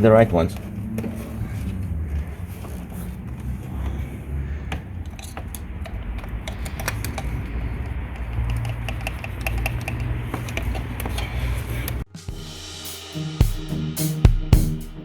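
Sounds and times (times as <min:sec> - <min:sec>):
steady low rumble: 0:00.0 - 0:09.5
clicks and knocks of engine parts: 0:00.0 - 0:12.0.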